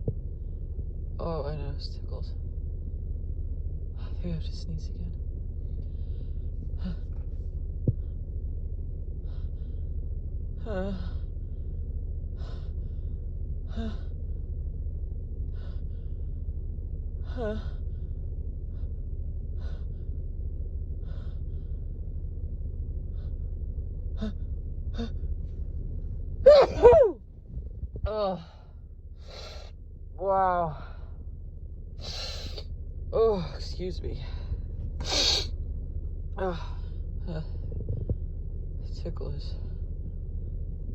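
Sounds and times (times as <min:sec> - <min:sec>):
steady low hum: 0:00.0 - 0:40.9.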